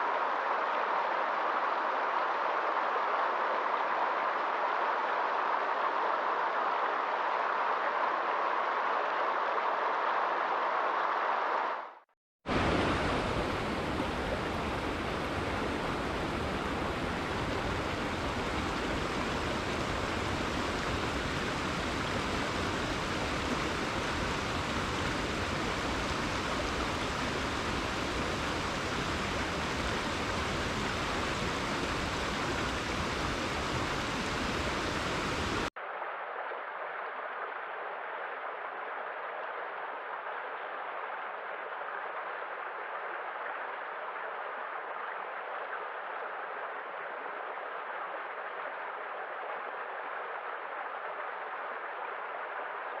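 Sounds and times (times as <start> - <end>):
rushing water: 0.0 - 36.0.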